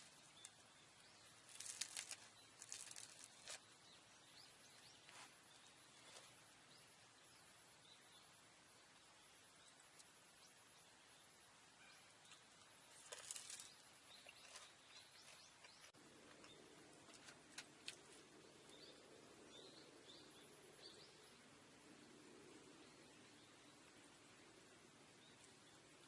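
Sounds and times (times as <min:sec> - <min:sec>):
faint chirps: 0:00.0 - 0:16.8.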